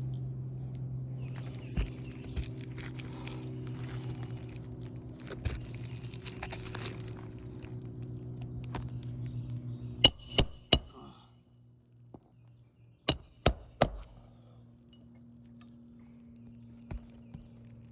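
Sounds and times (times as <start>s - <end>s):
steady low hum: 0.0s - 17.9s
hammer striking roofing nails: 10.0s - 11.1s, 13.1s - 14.4s.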